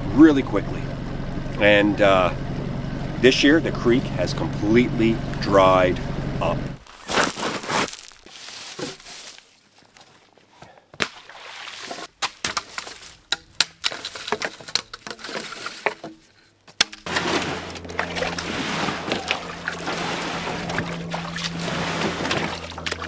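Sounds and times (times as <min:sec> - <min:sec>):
small boat motor humming: 0:00.0 - 0:06.8, 0:17.1 - 0:23.0
boat knocks and clunks: 0:17.1 - 0:23.0
water wash: 0:17.1 - 0:23.0.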